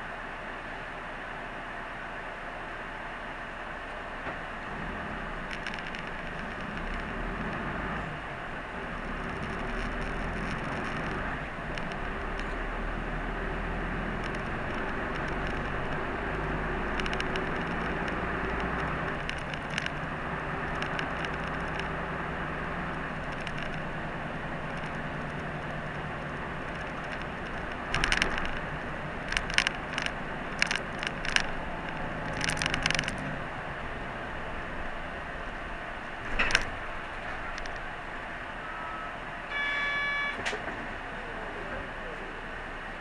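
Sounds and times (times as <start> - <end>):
bus engine hum: 0.0 - 43.0
road noise: 0.0 - 43.0
clicking rattles: 5.3 - 38.4.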